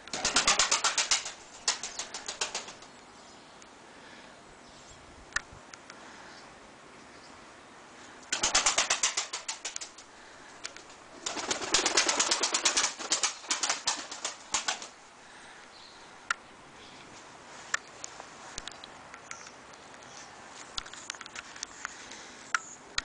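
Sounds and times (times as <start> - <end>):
pigeon wings flapping: 0.0 - 2.9, 8.3 - 10.0, 10.8 - 15.0.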